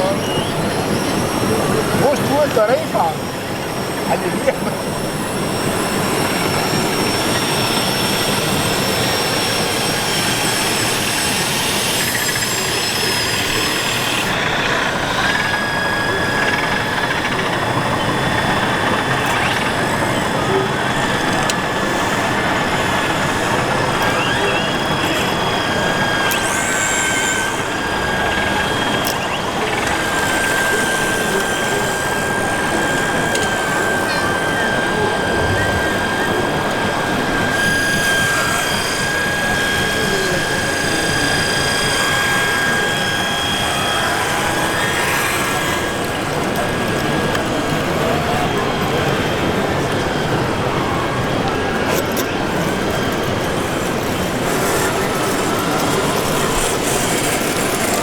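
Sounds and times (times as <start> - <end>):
busy hall with voices: 0.0 - 58.0
motors whining: 0.0 - 58.0.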